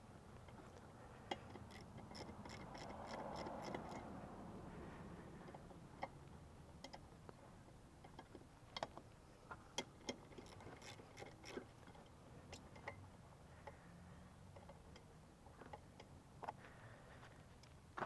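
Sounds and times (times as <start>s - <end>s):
hand tools and bolts clicking: 0.3s - 4.1s, 9.8s - 13.1s.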